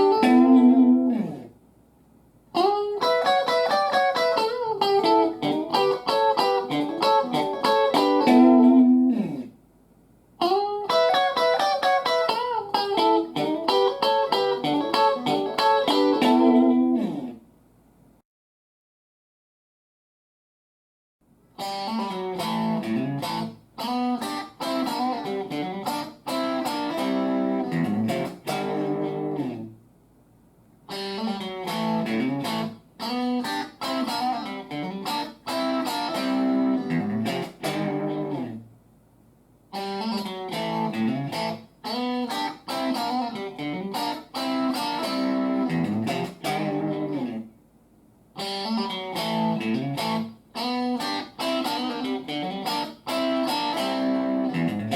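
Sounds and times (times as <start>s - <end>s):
electric guitar riffing: 0.0s - 1.5s, 2.6s - 9.5s, 10.4s - 17.4s, 21.6s - 29.7s, 30.9s - 38.6s, 39.7s - 47.4s, 48.4s - 54.9s.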